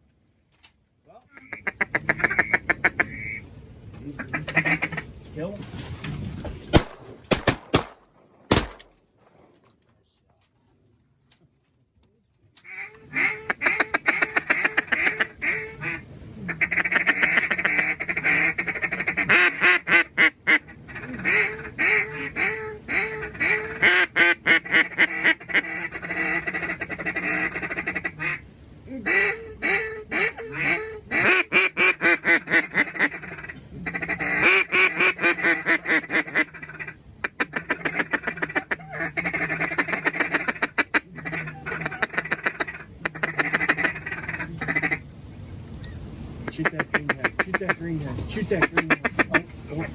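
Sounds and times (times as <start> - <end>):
duck quacking: 1.3 - 3.4, 4.2 - 5.1, 12.6 - 28.4, 29.0 - 45.0, 46.5 - 47.9, 48.6 - 49.9.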